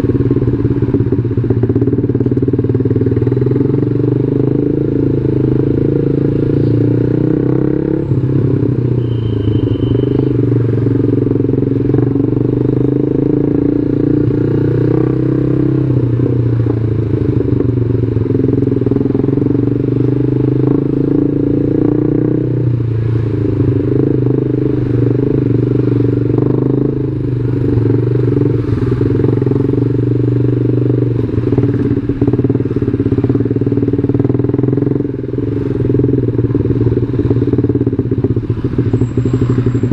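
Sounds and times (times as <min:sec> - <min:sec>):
motorcycle engine running: 0:00.0 - 0:39.9
short high beep: 0:09.0 - 0:10.3.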